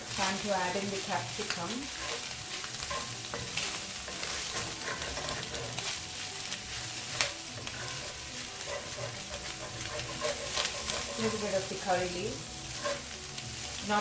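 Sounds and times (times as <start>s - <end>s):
food sizzling in a pan: 0.0s - 14.0s
utensil scraping a pan: 1.1s - 6.1s, 6.8s - 13.2s.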